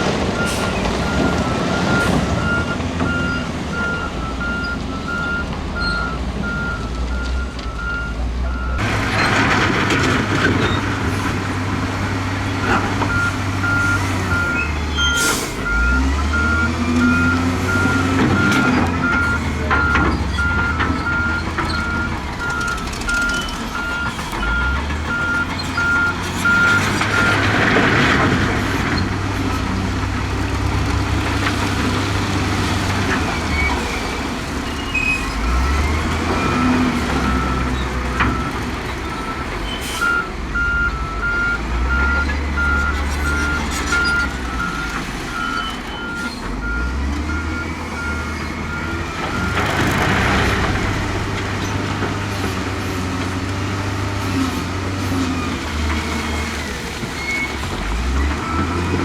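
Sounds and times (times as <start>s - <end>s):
diesel machinery engine: 0.0s - 59.0s
reversing alarm beeping: 0.4s - 8.8s, 13.1s - 27.5s, 39.9s - 49.8s.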